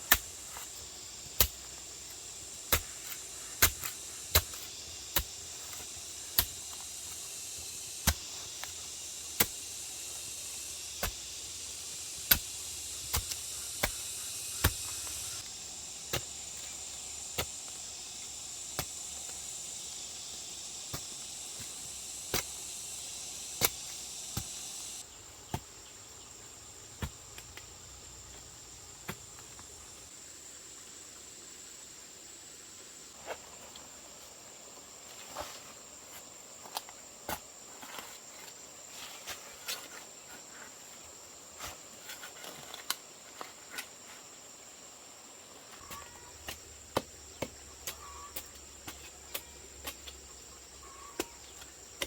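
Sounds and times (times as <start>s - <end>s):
high-pitched insect drone: 3.1s - 25.1s.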